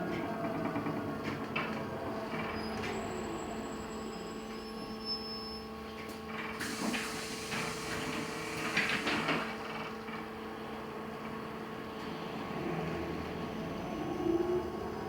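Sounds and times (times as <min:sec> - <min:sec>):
bus electrical hum: 0:00.3 - 0:15.0
bus door hiss and movement: 0:06.6 - 0:09.9.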